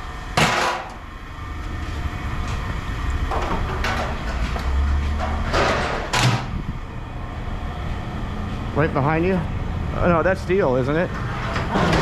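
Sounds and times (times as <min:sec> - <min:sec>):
vehicle engine rumbling: 0:00.0 - 0:12.0
scraping or clattering noises: 0:03.3 - 0:06.5, 0:11.1 - 0:12.0.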